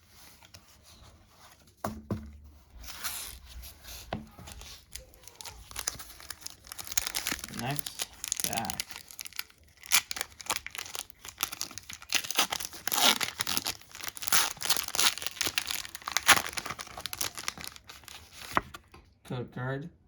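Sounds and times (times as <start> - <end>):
foil wrapper tearing and crinkling: 4.3 - 18.7.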